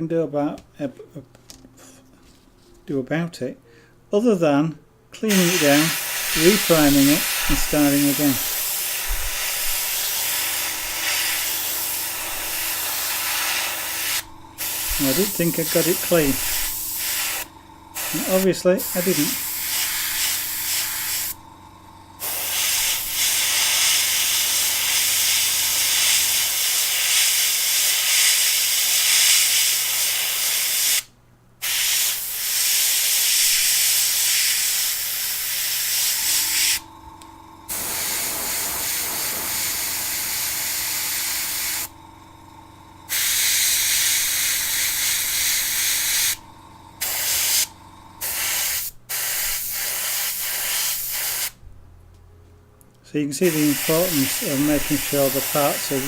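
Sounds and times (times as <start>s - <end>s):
low steady hum: 0.0s - 26.5s, 35.5s - 48.3s, 51.6s - 53.4s
airbrush spraying hiss: 5.3s - 21.4s, 22.2s - 36.9s, 37.6s - 42.0s, 43.1s - 51.6s, 53.4s - 56.0s.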